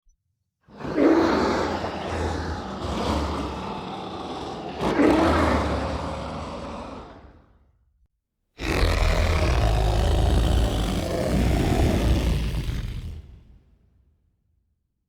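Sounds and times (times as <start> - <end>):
dinosaur roar: 0.7 - 7.7, 8.6 - 13.4.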